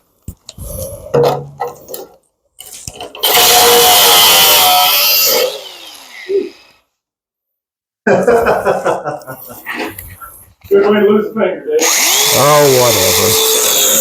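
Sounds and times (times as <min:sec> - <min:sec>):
power tool cutting metal: 0:03.1 - 0:06.8, 0:11.8 - 0:14.0
tool winding down: 0:03.2 - 0:06.8, 0:11.8 - 0:14.0.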